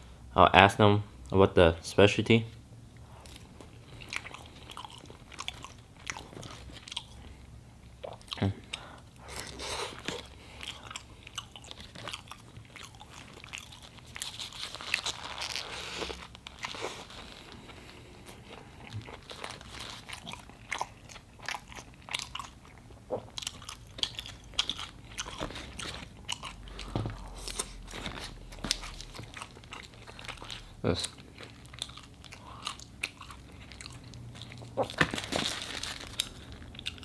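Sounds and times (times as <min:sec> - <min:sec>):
person chewing food: 0:03.0 - 0:37.0.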